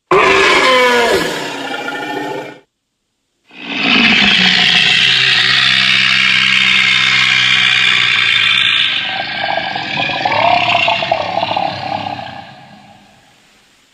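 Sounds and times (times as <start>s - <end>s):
dinosaur roar: 0.0s - 2.7s, 3.5s - 13.4s.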